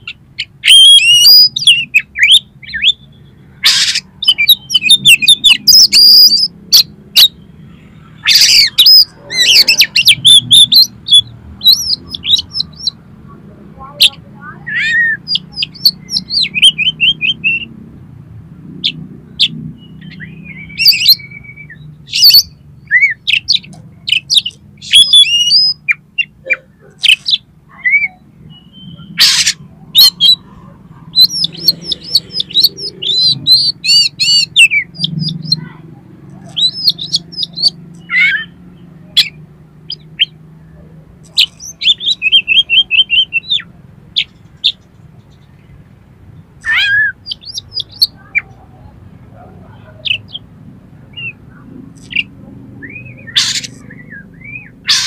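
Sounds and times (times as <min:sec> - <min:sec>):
bird singing chirps and trills: 0:00.0 - 0:18.1, 0:18.7 - 0:55.0.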